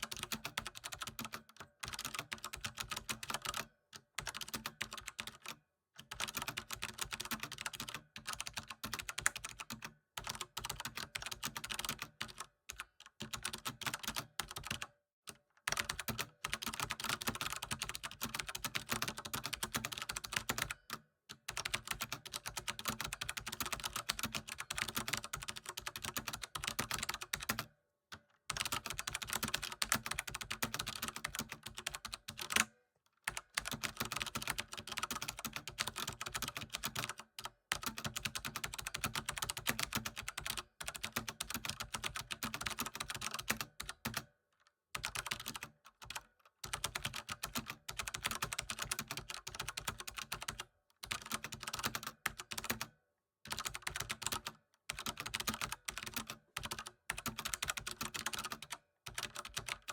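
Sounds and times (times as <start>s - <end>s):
computer keyboard typing: 0.0s - 14.9s, 15.7s - 27.7s, 28.5s - 32.7s, 33.3s - 44.3s, 45.0s - 59.9s.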